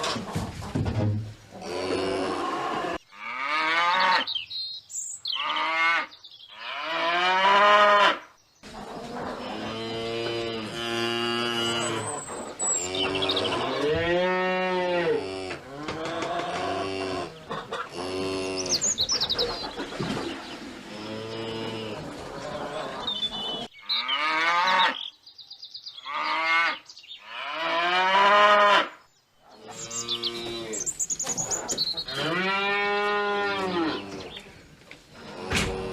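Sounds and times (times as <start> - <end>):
cattle mooing: 9.4 - 12.2, 35.2 - 35.9.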